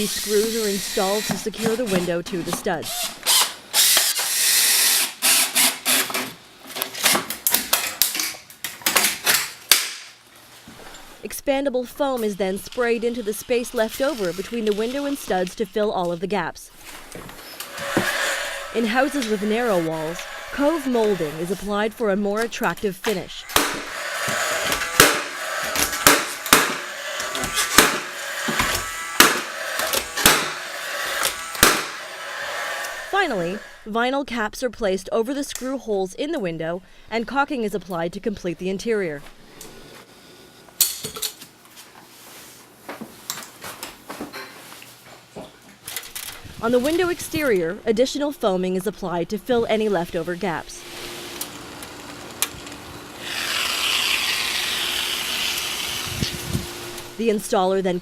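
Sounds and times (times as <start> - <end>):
power drill driving screws: 0.0 - 2.2, 2.8 - 7.3, 17.5 - 21.8, 23.4 - 33.8, 50.8 - 57.1
drill clicks: 2.9 - 6.4, 23.5 - 33.1
hammer driving nails into wood: 23.5 - 32.0.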